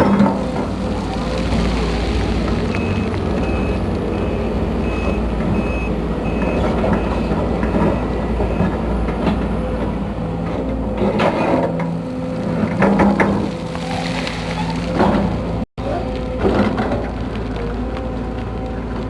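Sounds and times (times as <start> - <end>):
excavator diesel engine running: 0.0 - 19.0
travel alarm beeping: 2.8 - 7.3.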